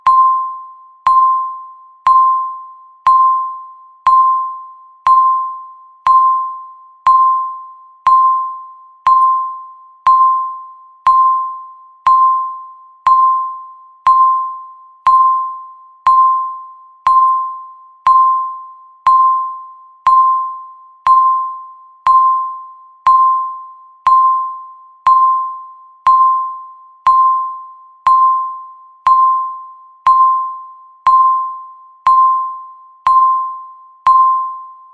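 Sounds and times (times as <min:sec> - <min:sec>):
countdown timer beep: 0:00.0 - 0:34.9.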